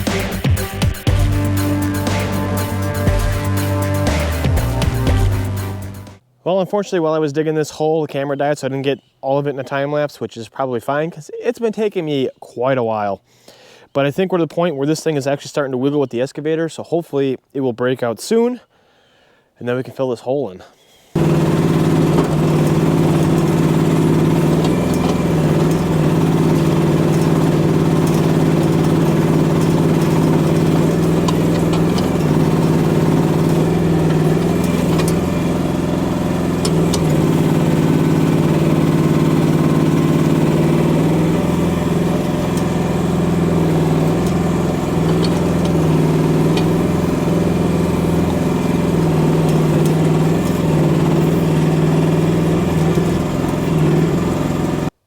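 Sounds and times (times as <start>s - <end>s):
excavator engine under load: 0.0s - 6.2s, 21.2s - 55.0s
sharp clicks and knocks: 21.2s - 54.4s.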